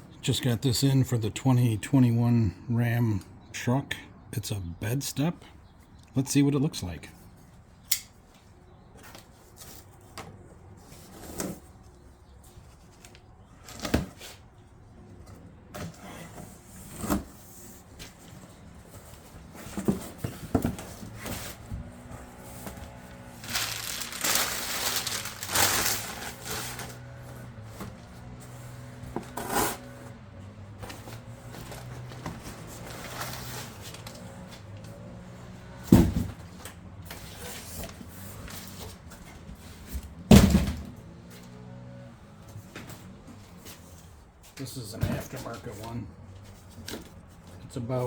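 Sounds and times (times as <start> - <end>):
packaging rustling and crinkling: 23.3 - 27.1.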